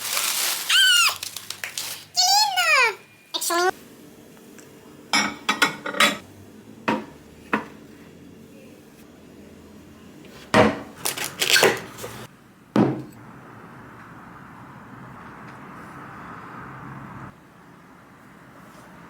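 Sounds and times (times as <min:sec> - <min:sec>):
plates and dishes clinking: 0:05.1 - 0:06.2.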